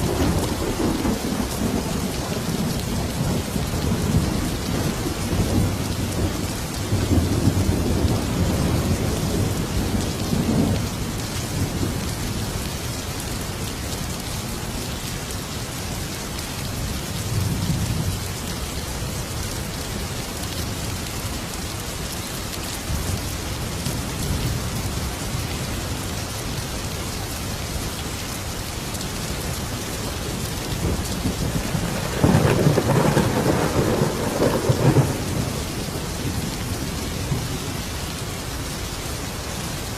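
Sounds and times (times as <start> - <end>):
heavy rain: 0.0 - 39.9
rolling thunder: 30.2 - 37.8.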